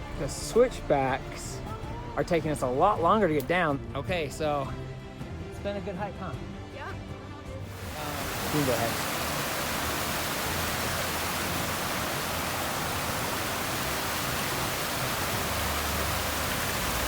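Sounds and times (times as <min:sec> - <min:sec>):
falling water rushing: 0:07.7 - 0:17.0.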